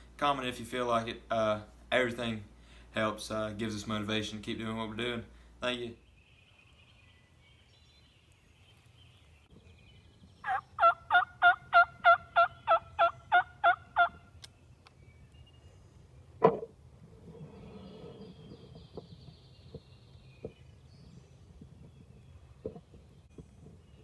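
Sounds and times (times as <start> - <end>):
turkey gobbling: 10.4 - 14.2.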